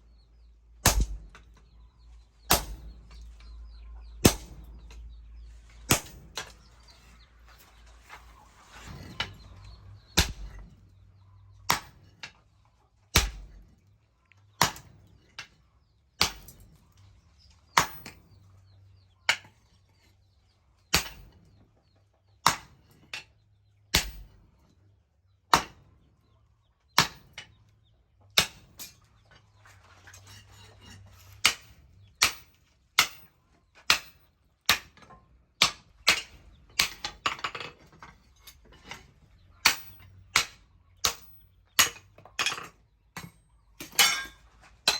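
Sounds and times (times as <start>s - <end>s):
hammer striking steel on anvil: 0.8s - 1.4s, 2.5s - 2.9s.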